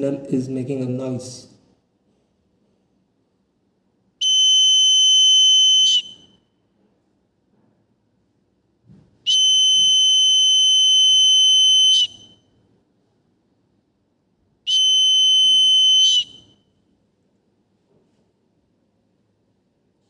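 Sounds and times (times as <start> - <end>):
fire alarm buzzer tone: 4.2 - 6.5, 9.3 - 12.6, 14.7 - 16.8.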